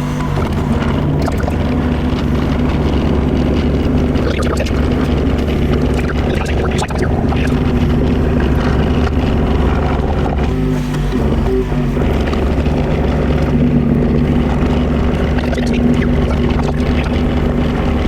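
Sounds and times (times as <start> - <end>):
excavator diesel engine running: 0.0 - 18.0
knocks and scrapes: 0.0 - 18.0.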